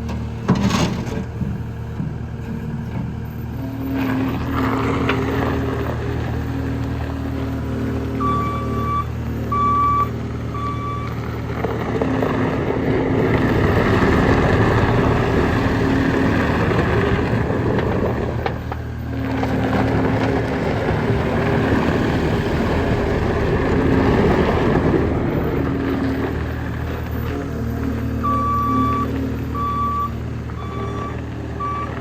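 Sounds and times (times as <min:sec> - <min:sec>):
diesel engine running: 0:00.0 - 0:32.0
backup alarm beeps: 0:08.2 - 0:11.0, 0:28.2 - 0:32.0.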